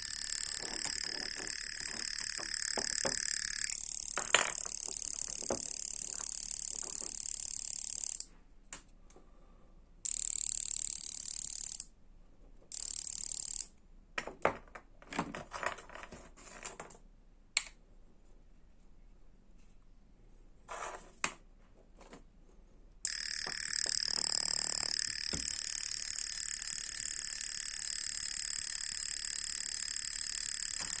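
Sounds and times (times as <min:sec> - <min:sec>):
toy motor rattling buzz: 0:00.0 - 0:08.3, 0:10.1 - 0:11.9, 0:12.7 - 0:13.7, 0:23.1 - 0:31.0
clicks and taps: 0:00.5 - 0:07.2.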